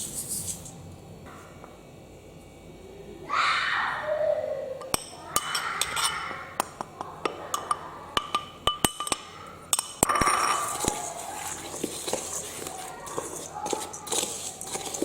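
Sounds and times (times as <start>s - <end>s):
utensil clinking against metal pot: 4.8s - 15.0s.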